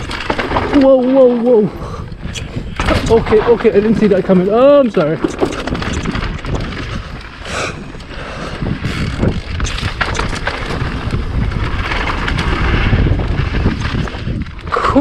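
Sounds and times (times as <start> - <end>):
bike clattering and knocking: 0.0 - 1.6, 2.6 - 7.4
bike tyre noise: 0.0 - 15.0
wind buffeting microphone: 0.0 - 15.0.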